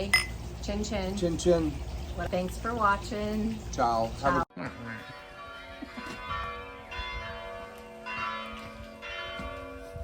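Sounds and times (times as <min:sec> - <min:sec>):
bells ringing: 0:04.8 - 0:10.0.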